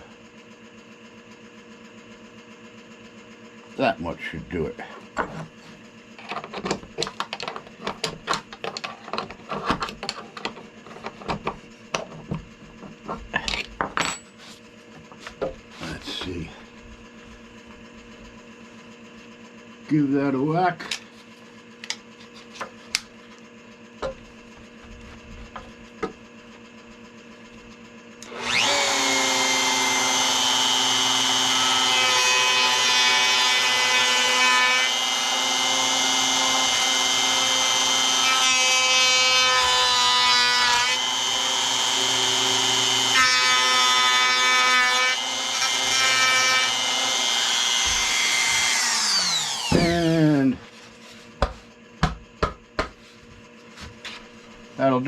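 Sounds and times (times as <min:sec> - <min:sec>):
router whining cutting wood: 0:15.1 - 0:16.6, 0:28.2 - 0:50.7.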